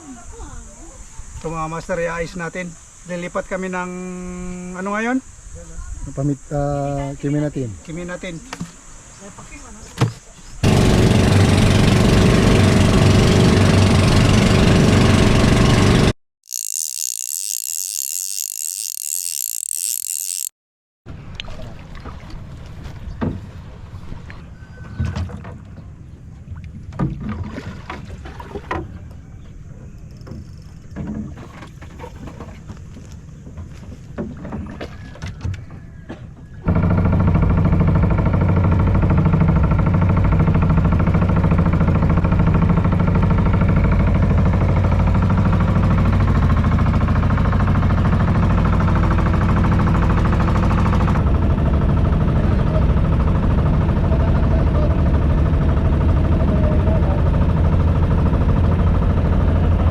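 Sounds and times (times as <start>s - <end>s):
boat engine running: 10.6s - 20.5s, 36.6s - 59.9s.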